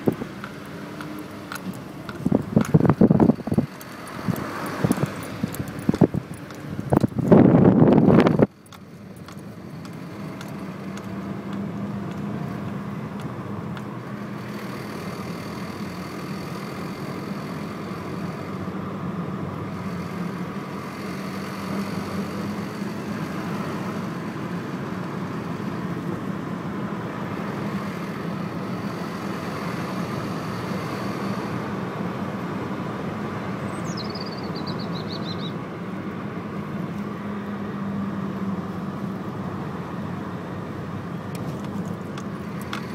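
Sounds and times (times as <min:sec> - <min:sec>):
car engine rattling drone: 0:00.0 - 0:42.9.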